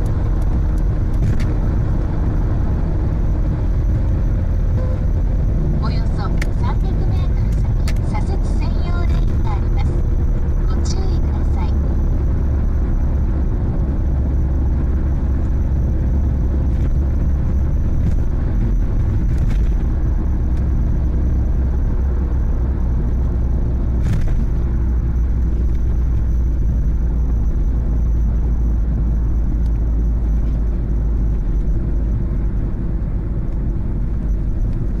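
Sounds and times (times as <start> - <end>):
car driving with low rumble: 0.0 - 35.0
wheel bearing drone: 0.0 - 35.0.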